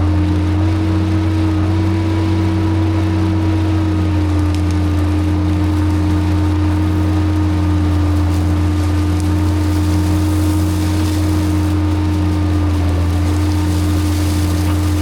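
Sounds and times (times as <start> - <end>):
tractor engine droning: 0.0 - 15.0.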